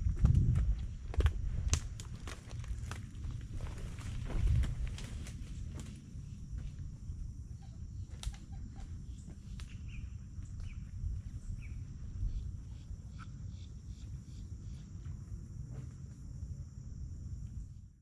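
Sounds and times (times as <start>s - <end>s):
bird chirps: 8.5s - 14.9s.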